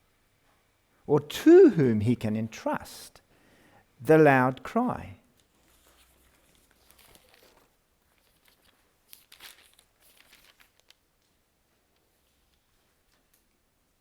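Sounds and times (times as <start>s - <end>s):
paper pages turning: 5.4s - 11.4s.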